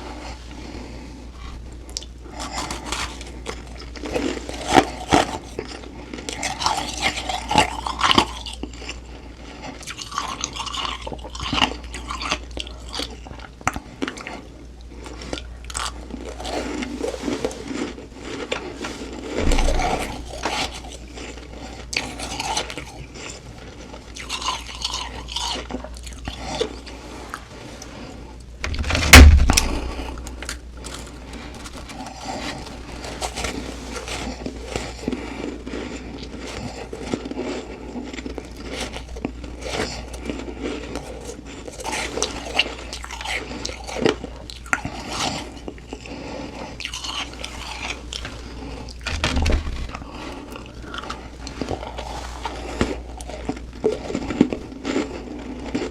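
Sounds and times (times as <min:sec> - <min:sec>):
chewing crunchy ice: 0:00.0 - 0:28.5, 0:29.5 - 0:49.1, 0:49.8 - 0:55.9
low steady hum: 0:12.6 - 0:55.9.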